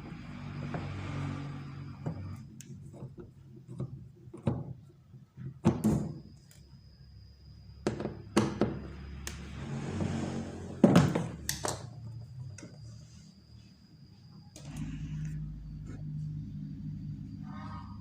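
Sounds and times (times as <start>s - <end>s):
low steady hum: 10.8s - 18.0s.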